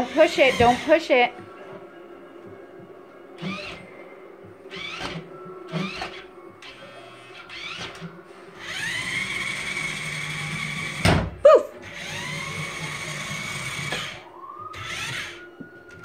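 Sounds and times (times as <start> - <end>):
toy car electric motor whining: 0.0 - 1.1, 3.4 - 3.8, 4.7 - 11.1, 11.8 - 15.4.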